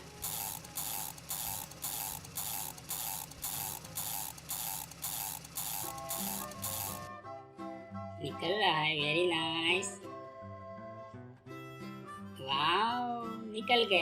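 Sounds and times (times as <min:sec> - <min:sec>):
toy winch ratcheting: 0:00.0 - 0:07.1.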